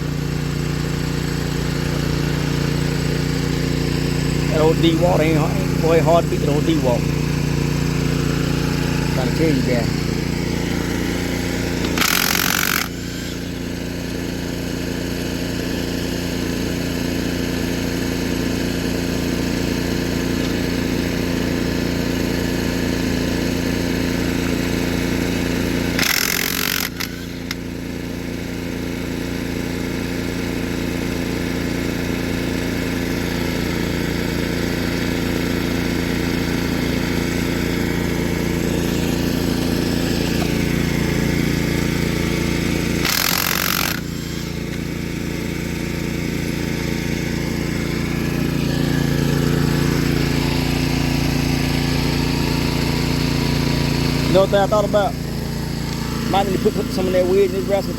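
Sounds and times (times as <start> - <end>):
engine running steadily: 0.0 - 57.9
loud bursts of hissing: 1.0 - 15.4, 37.0 - 57.9.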